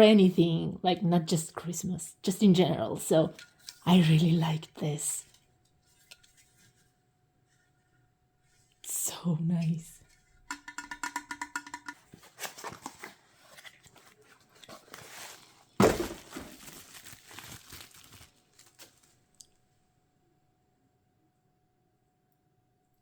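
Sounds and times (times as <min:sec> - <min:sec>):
packaging crinkling and rustling: 0:12.1 - 0:19.6
packaging tearing rip: 0:15.8 - 0:19.1.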